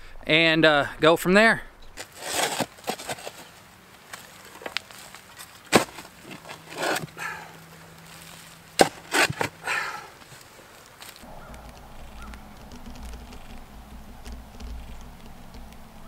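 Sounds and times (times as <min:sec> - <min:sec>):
scraping of loose dirt: 0:01.4 - 0:16.0
digging tool striking soil: 0:02.0 - 0:07.4, 0:08.8 - 0:09.9.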